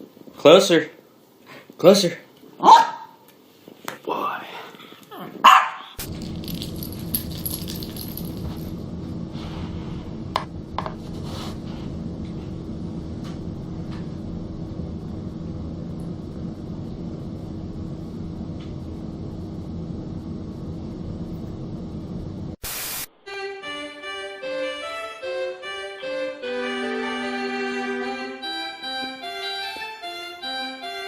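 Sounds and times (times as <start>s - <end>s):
faint low hum: 4.8s - 22.6s
instrumental music held notes: 23.3s - 31.0s.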